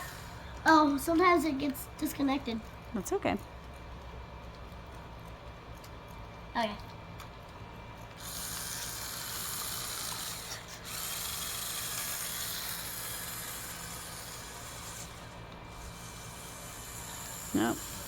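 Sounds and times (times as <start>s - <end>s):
toy car motor whirring: 0.0s - 1.0s, 8.2s - 18.0s.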